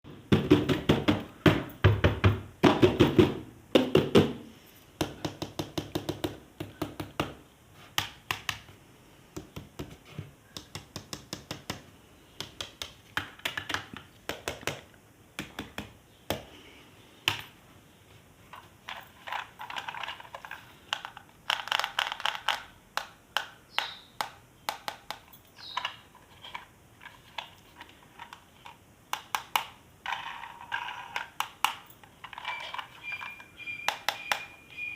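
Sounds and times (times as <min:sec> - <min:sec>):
plastic toys clicking and tapping: 0:10.6 - 0:16.4, 0:18.5 - 0:34.8.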